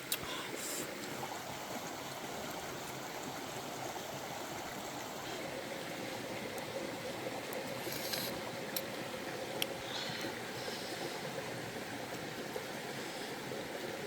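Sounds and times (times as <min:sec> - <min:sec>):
water rushing: 0:00.0 - 0:14.0.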